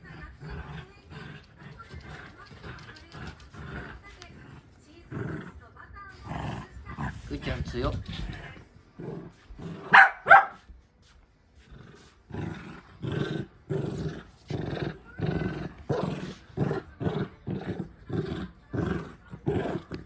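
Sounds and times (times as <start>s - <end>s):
dog barking: 9.9s - 10.7s
dog growling yaps: 12.4s - 20.0s.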